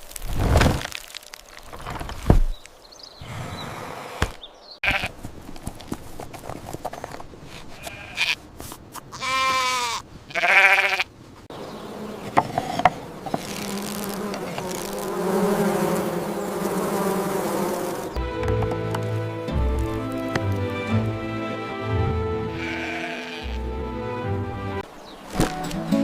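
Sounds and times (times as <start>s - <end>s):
livestock bleating: 4.8s - 5.1s, 7.8s - 8.4s, 9.1s - 11.1s, 22.5s - 23.7s
insect buzzing: 11.5s - 18.2s.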